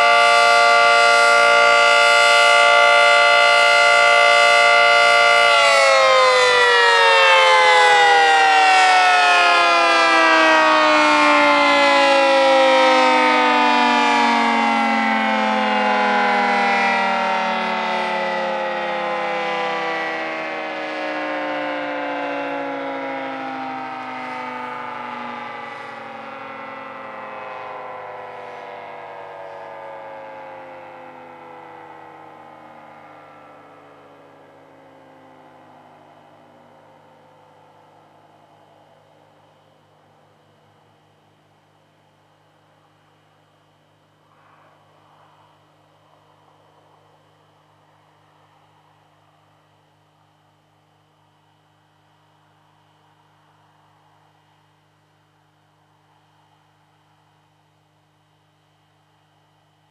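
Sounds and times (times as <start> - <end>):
warning siren winding down: 0.0 - 40.0.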